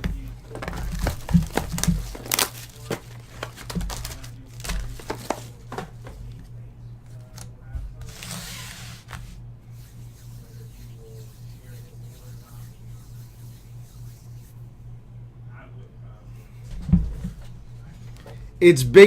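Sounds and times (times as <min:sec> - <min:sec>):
packaging rustling and crinkling: 0:00.4 - 0:05.9.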